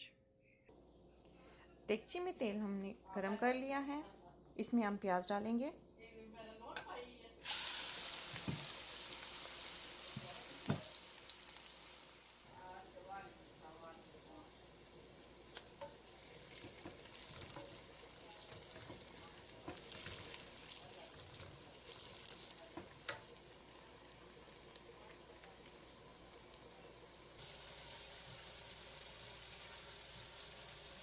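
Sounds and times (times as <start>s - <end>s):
onions sizzling in hot oil: 7.4s - 31.0s.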